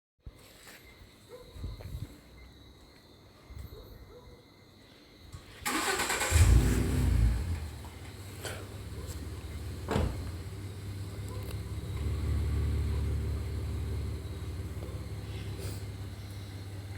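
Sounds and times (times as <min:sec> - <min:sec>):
car engine starting and idling: 0:05.6 - 0:16.9.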